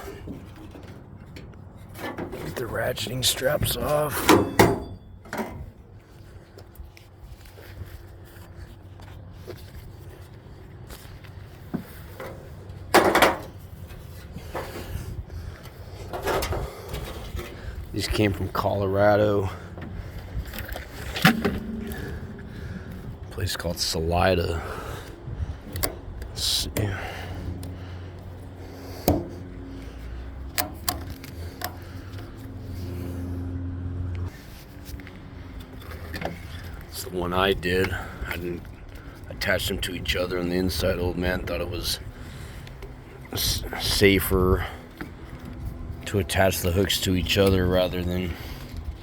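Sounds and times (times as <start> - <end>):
steady low hum: 13.6 - 36.8.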